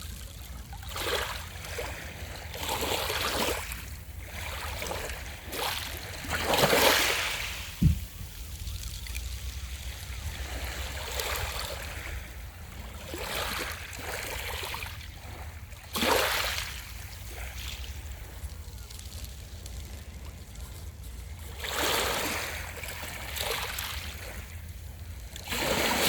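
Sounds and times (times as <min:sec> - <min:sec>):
small ocean waves breaking: 0:00.4 - 0:19.2, 0:21.1 - 0:26.0
brief low thump: 0:07.8 - 0:08.4.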